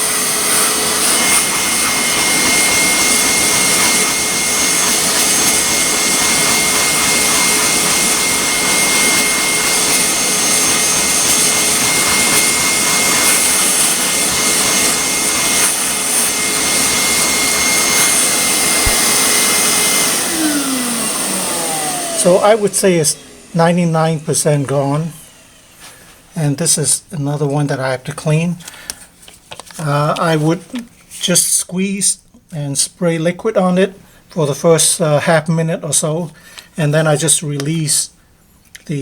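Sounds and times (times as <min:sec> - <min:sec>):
steam vacuum motor whining: 0:00.0 - 0:27.5.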